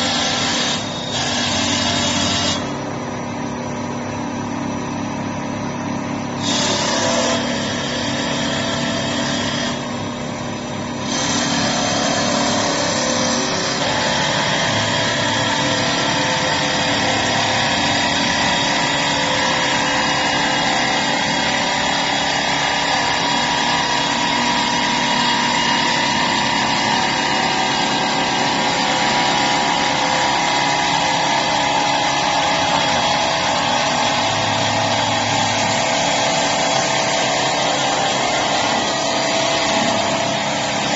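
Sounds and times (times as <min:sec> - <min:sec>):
cutter hissing on wood: 0:00.0 - 0:02.8, 0:06.4 - 0:10.0, 0:11.0 - 0:30.4
lathe motor humming: 0:00.0 - 0:40.9.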